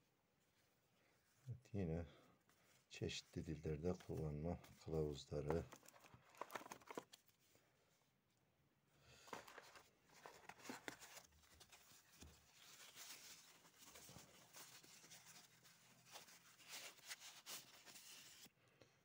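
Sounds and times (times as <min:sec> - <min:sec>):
packaging rustling and clicking: 0:05.4 - 0:07.3, 0:09.3 - 0:18.4.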